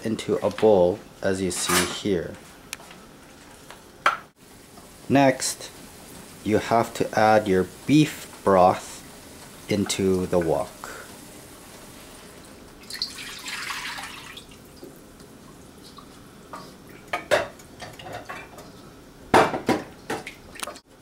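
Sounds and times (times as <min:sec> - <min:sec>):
broth pouring into a wok: 0:12.8 - 0:14.6.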